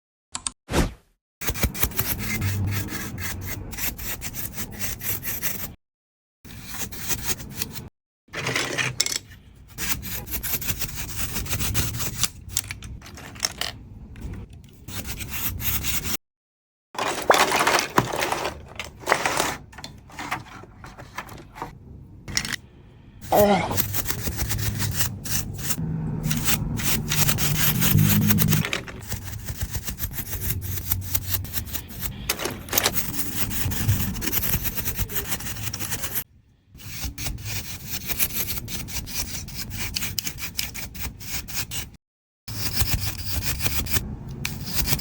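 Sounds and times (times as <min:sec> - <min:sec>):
brush rubbing plastic bricks: 0:23.8 - 0:36.2.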